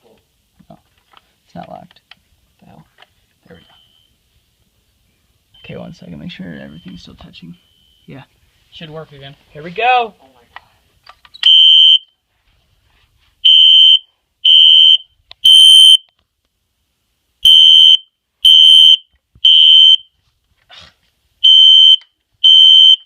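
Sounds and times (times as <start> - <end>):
fire alarm beeping: 6.7 - 8.1, 11.4 - 12.1, 13.4 - 16.1, 17.4 - 20.1, 21.4 - 23.0.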